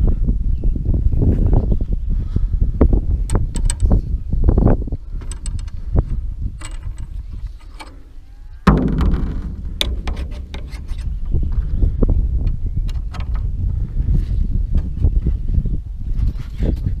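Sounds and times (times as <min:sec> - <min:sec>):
wind rumble on microphone: 0:00.0 - 0:17.0
metallic clicks of tools and parts: 0:03.3 - 0:04.0, 0:05.2 - 0:05.8, 0:06.6 - 0:08.1
loud knock: 0:08.7 - 0:11.3.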